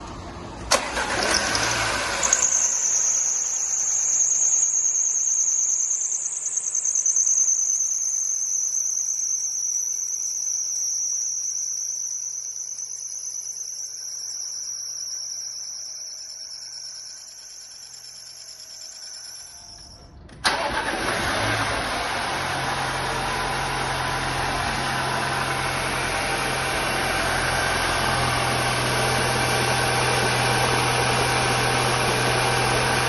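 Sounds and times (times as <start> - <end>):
engine idling: 0.0 - 14.7, 15.4 - 33.0
engine click and cranking: 0.6 - 4.8, 18.0 - 22.5
high-pitched belt squeal: 0.7 - 21.0.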